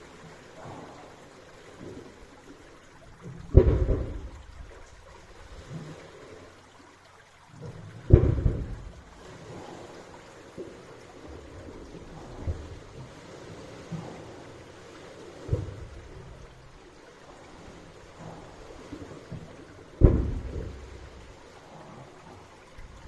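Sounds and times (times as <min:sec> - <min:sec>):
low rumbles: 0:03.2 - 0:05.6, 0:07.6 - 0:09.9, 0:11.1 - 0:23.0
waves booming in a pipe: 0:03.2 - 0:06.0, 0:07.6 - 0:23.0.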